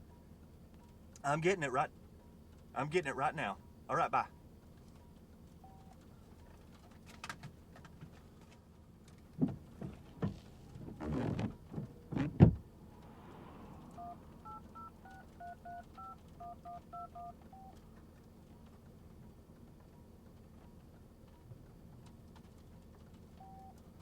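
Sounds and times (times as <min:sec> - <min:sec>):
touch-tone beeps: 0:14.0 - 0:17.7.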